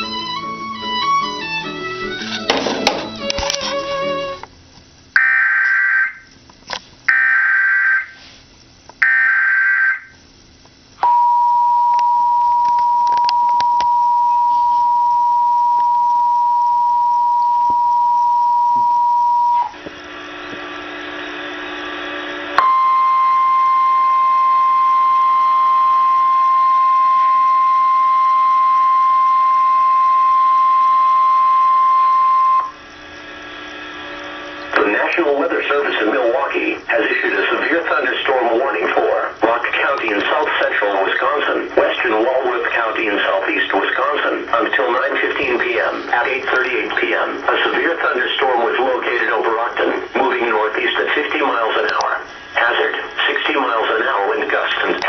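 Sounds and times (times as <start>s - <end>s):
screeching data bursts: 7.1s - 8.2s, 9.0s - 11.0s
steady warning tone: 9.0s - 54.8s
two-tone attention signal: 11.0s - 19.7s, 22.6s - 32.8s.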